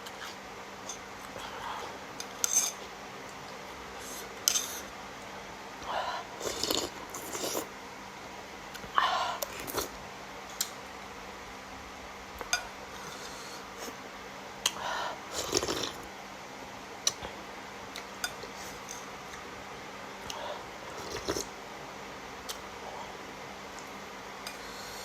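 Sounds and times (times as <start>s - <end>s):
low background hum: 0.0s - 25.0s
eating sounds: 6.4s - 7.7s.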